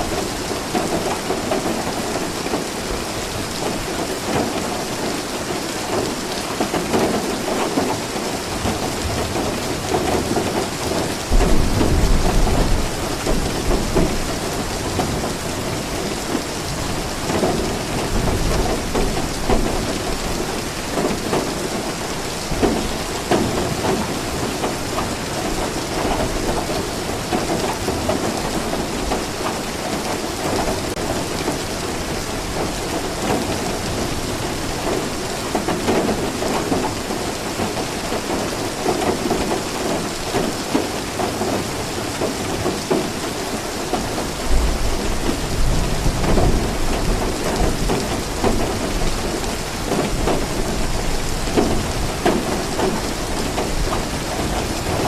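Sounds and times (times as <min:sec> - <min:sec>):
steady rainfall: 0:00.0 - 0:55.0
thunder rumble: 0:11.3 - 0:15.8.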